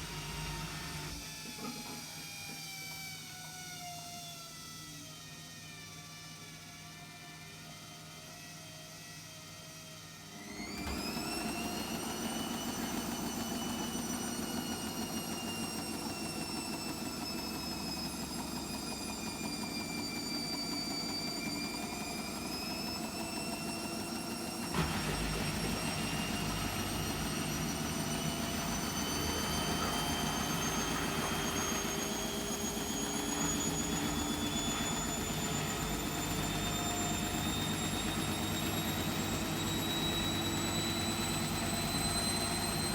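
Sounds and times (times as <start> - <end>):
washing machine spinning: 10.6 - 42.9.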